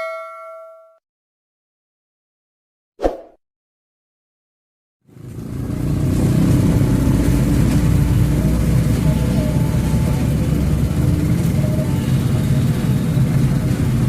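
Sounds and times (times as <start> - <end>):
heavy diesel engine rumbling: 5.1 - 14.0.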